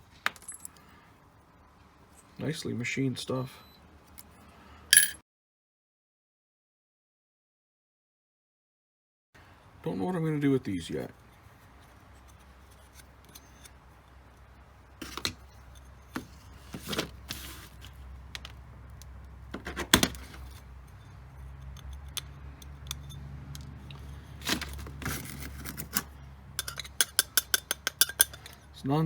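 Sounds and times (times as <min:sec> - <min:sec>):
metal parts clinking on work surface: 0:00.3 - 0:00.8, 0:04.9 - 0:05.2, 0:26.6 - 0:28.7.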